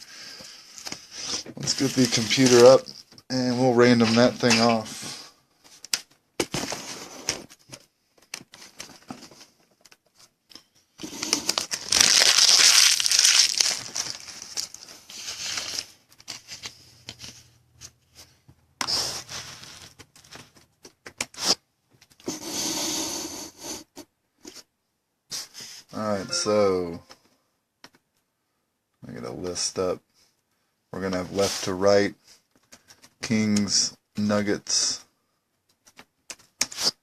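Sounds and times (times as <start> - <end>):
plastic or paper crinkling: 0.7 - 3.1, 11.0 - 17.4, 19.2 - 20.7.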